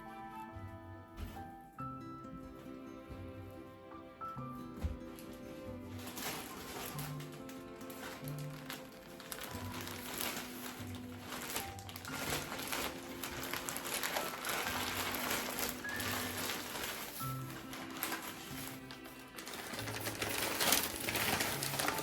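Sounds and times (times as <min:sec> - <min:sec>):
rustling: 0:04.8 - 0:22.0.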